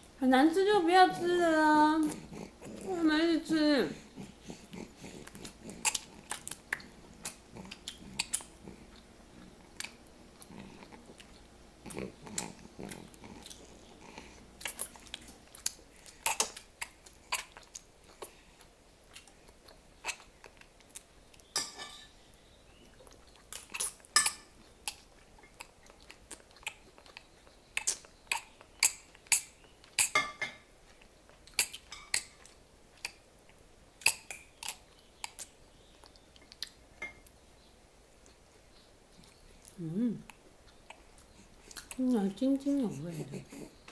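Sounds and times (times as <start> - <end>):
baby sucking on hand: 4.0 - 9.0, 9.8 - 21.0.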